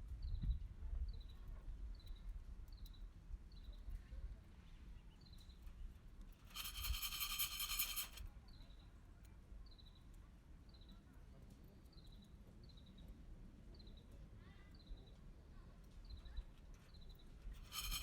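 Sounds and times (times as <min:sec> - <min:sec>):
pulsed buzzing trill: 0:06.5 - 0:08.2, 0:17.7 - 0:18.0.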